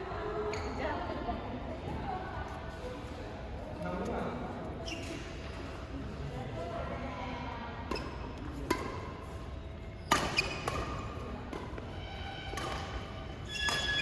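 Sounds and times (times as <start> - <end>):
rackets striking shuttlecock: 7.9 - 9.1, 10.1 - 14.0
short high squeaks: 13.4 - 14.0.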